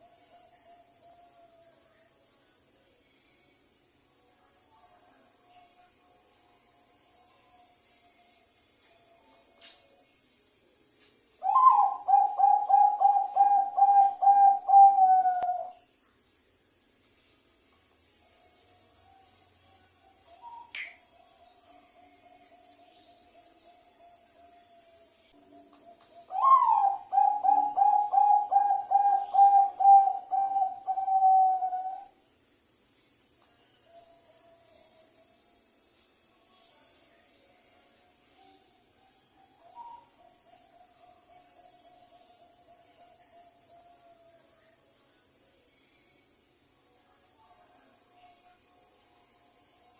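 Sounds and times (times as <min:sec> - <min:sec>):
crickets chirping: 0:00.0 - 0:49.9
dove cooing: 0:11.4 - 0:15.7, 0:26.2 - 0:32.1.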